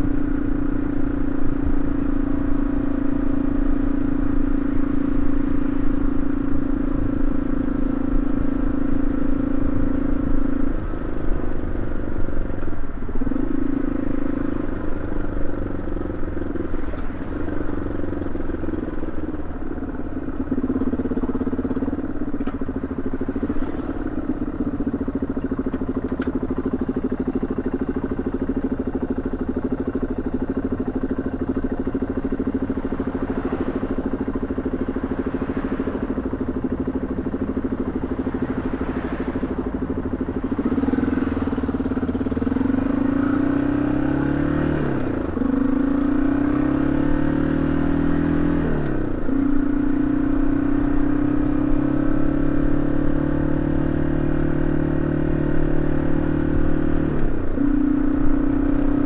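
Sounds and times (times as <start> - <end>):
motorcycle engine accelerating: 0.0 - 59.0.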